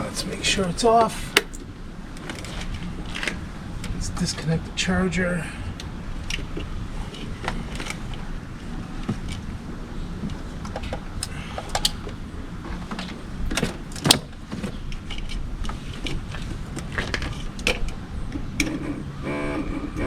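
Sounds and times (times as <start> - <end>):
battery clamps and cables clicking: 1.3 - 1.7, 13.0 - 14.4.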